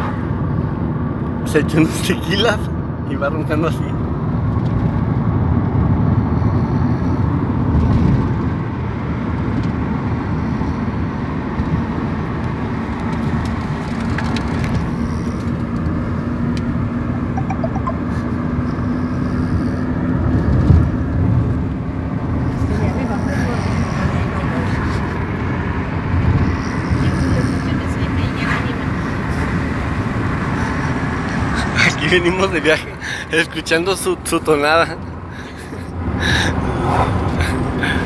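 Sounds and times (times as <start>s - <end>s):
road and engine noise: 0.0s - 38.0s
person snoring: 26.4s - 27.8s.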